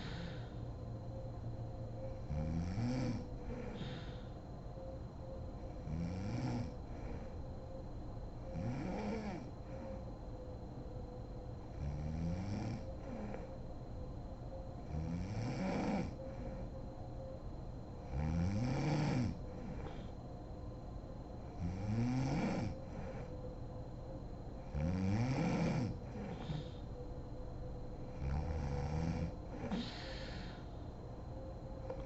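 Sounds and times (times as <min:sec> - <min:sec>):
woman snoring: 0:00.0 - 0:00.6, 0:02.2 - 0:04.3, 0:05.8 - 0:07.4, 0:08.5 - 0:10.0, 0:11.7 - 0:13.5, 0:14.9 - 0:16.7, 0:18.1 - 0:20.1, 0:21.6 - 0:23.3, 0:24.7 - 0:26.9, 0:28.1 - 0:30.7.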